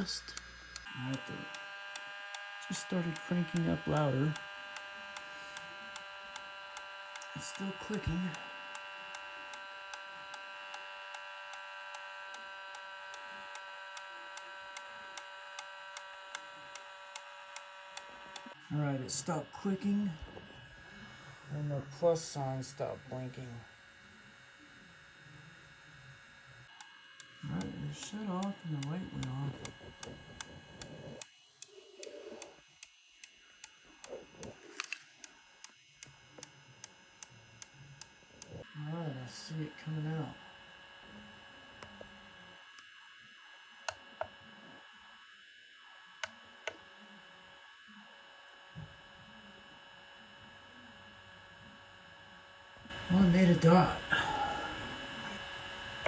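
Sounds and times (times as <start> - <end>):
printer extruder clicking: 0.0 - 18.6
steady printer whine: 0.0 - 56.0.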